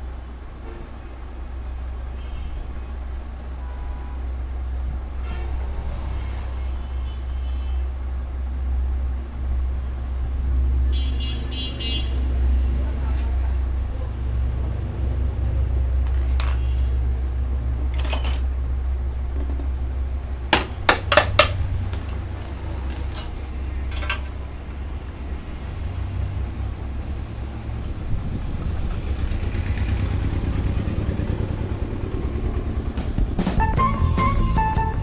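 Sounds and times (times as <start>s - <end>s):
three-wheeler engine rumble: 0.0s - 35.0s
sharp metallic clanks: 17.9s - 18.6s, 20.5s - 22.2s, 23.0s - 24.4s.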